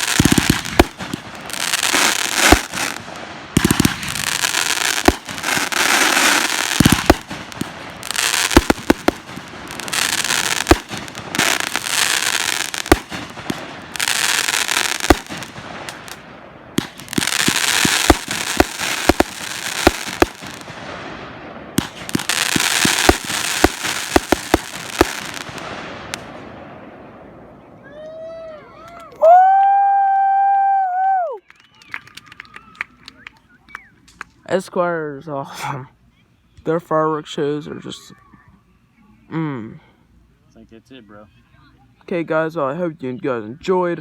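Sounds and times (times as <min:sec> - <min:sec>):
dense firework crackle: 0:00.0 - 0:28.5.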